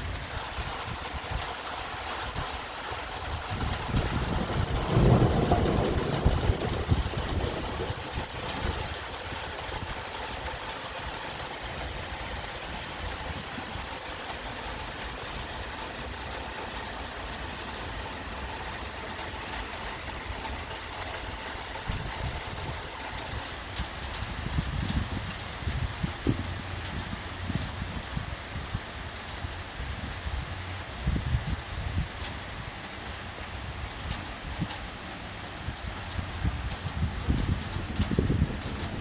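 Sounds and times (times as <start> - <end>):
rain hissing: 0.0 - 39.0
raindrop ticks: 0.1 - 39.0
low uneven rumble: 3.3 - 11.0.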